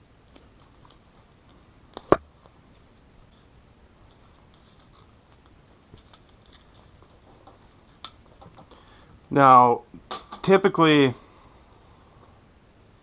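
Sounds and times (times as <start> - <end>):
wire clicks and rustling: 4.0 - 8.8.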